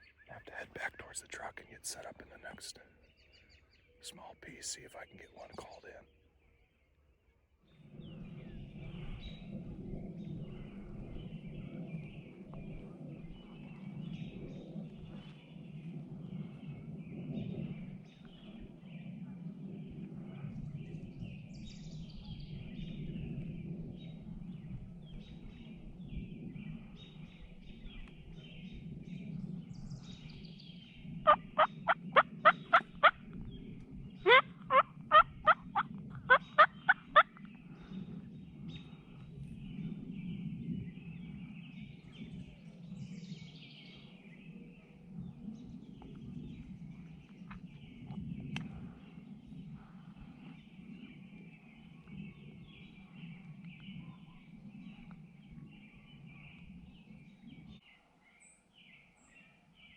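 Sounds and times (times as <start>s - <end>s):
songbirds chirping: 0.0s - 59.9s
steady outdoor hum: 0.0s - 59.9s
turkey calling: 31.3s - 33.2s, 34.2s - 37.4s.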